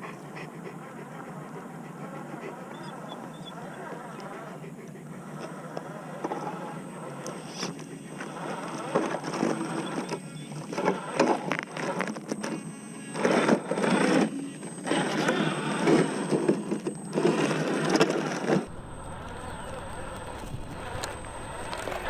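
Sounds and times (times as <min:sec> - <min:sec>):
small electric motor whining: 0:00.0 - 0:22.0.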